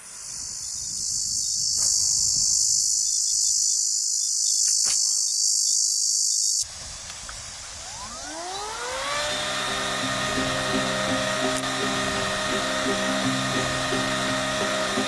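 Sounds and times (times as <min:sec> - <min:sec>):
insects chirring: 0:00.0 - 0:09.0.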